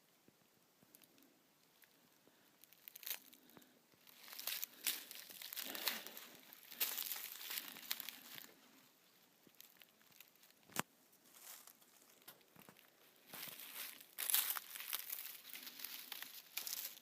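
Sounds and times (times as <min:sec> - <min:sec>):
footsteps crunching through dry leaves: 0:04.0 - 0:08.6, 0:11.3 - 0:17.0.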